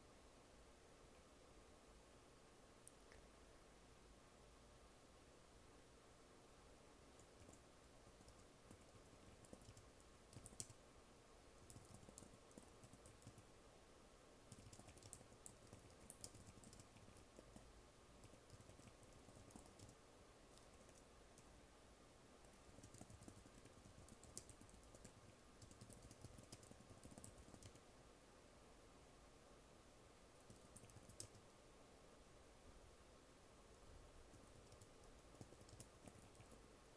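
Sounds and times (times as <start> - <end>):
typing on computer keyboard: 7.2 - 7.6, 8.2 - 10.8, 11.6 - 13.4, 14.5 - 20.0, 20.6 - 21.5, 22.4 - 27.8, 30.4 - 31.4, 33.8 - 36.7.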